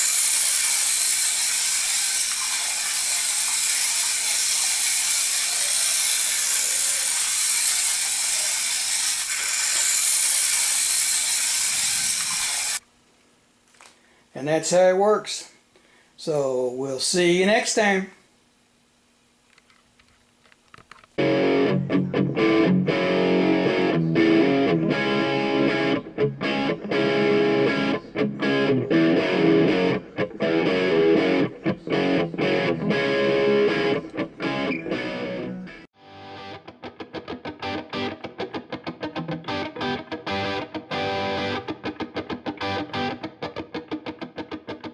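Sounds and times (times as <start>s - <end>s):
toy truck motor whirring: 0.0s - 12.8s
distorted electric guitar riff: 21.2s - 44.9s.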